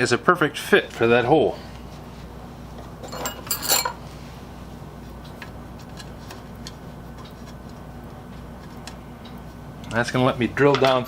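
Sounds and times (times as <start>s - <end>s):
shop hum: 0.0s - 10.7s
small metal parts clicking: 3.0s - 4.0s.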